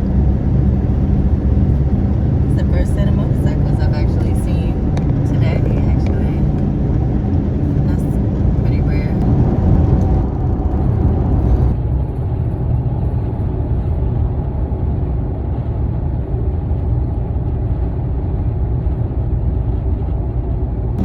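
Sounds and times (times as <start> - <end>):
car engine hum: 0.0 - 14.0
road rumble inside car: 0.0 - 21.0.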